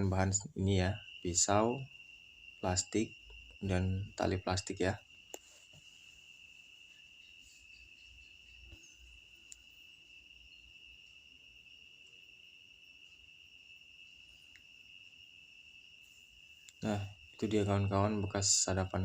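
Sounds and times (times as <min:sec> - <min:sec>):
cricket trill: 0:00.0 - 0:19.0
small tick: 0:09.4 - 0:09.6.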